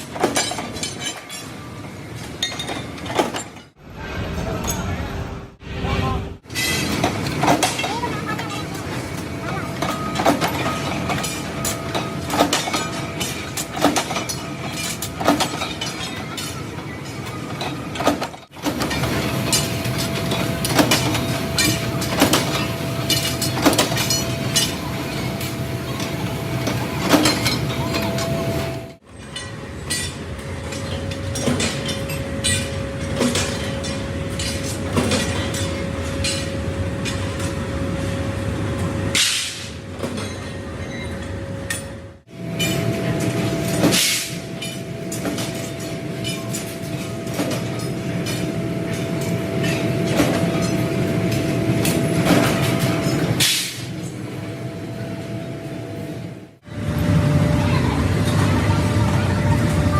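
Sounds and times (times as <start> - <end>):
factory machinery humming: 0.0 - 59.9.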